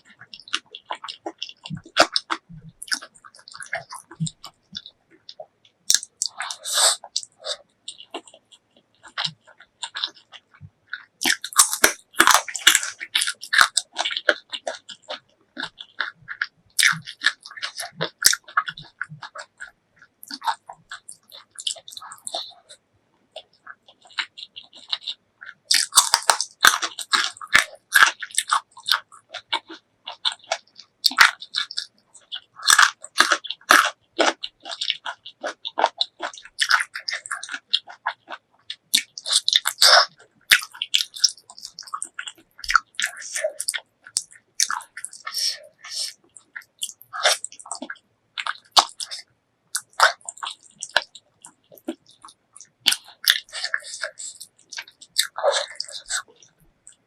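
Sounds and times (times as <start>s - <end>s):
close-miked chewing and biting: 0.0s - 57.0s.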